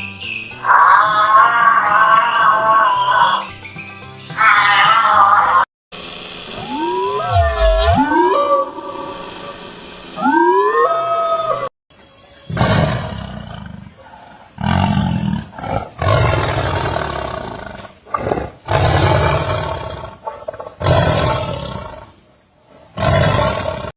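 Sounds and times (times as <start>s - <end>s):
large animal roaring: 6.6s - 9.6s, 12.5s - 22.1s, 22.9s - 23.9s.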